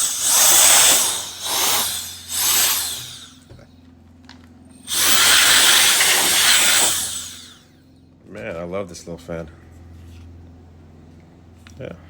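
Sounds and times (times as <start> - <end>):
electric air duster blowing: 0.0 - 3.5, 4.9 - 7.6.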